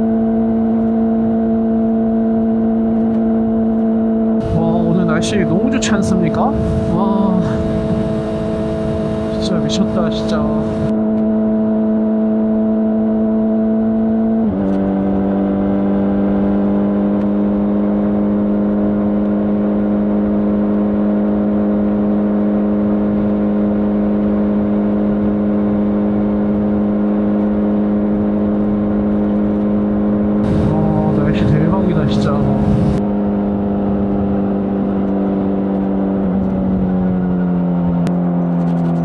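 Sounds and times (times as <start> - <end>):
motorcycle engine cruising: 0.8 - 39.0
wind rush on microphone: 4.4 - 11.1, 23.2 - 39.0.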